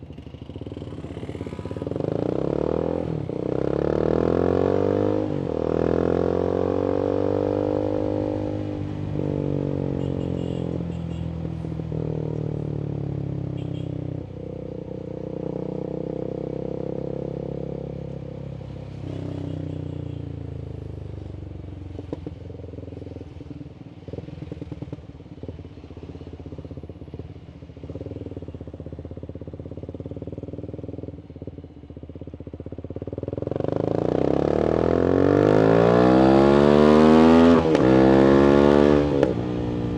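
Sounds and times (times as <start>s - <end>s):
motorcycle engine revving: 0.2s - 11.2s, 32.6s - 39.9s.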